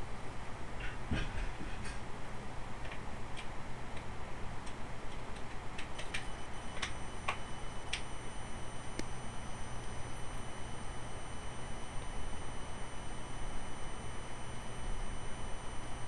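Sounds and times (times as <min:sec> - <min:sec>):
laptop high-pitched whine: 0:00.0 - 0:16.0
low steady hum: 0:00.0 - 0:16.0
sharp clicks: 0:02.8 - 0:08.1.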